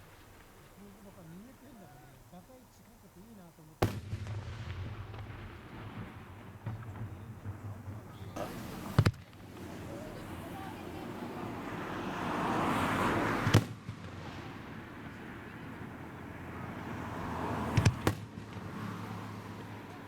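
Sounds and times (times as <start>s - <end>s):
fireworks bangs: 0.0s - 20.0s
rushing noise of fireworks: 0.0s - 20.0s.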